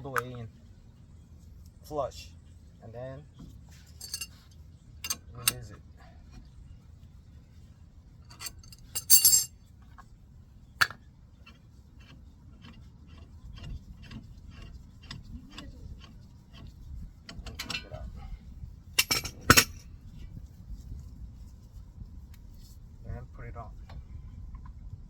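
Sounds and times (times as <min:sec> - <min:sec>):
metal tools clattering: 0:03.9 - 0:04.4, 0:08.3 - 0:09.5, 0:19.0 - 0:19.8.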